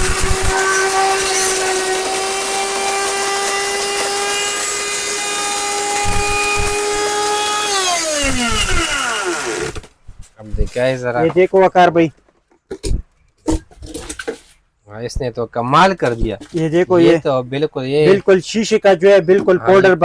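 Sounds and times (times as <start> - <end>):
blender motor whining: 0.0 - 9.9.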